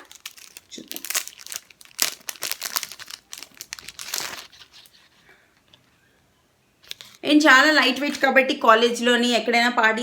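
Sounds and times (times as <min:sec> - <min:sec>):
packaging crinkling: 0:00.0 - 0:05.2.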